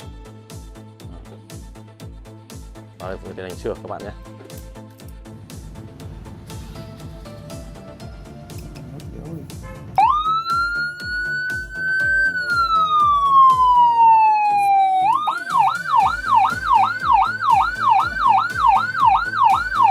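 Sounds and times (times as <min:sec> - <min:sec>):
background music with a beat: 0:00.0 - 0:19.9
electronic siren wail and yelp: 0:10.0 - 0:19.9.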